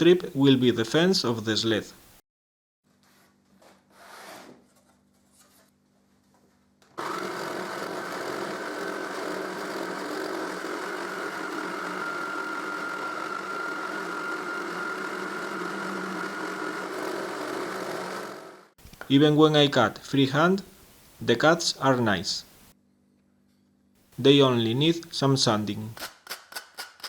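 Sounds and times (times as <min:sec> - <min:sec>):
jigsaw cutting a board: 0:07.0 - 0:18.8.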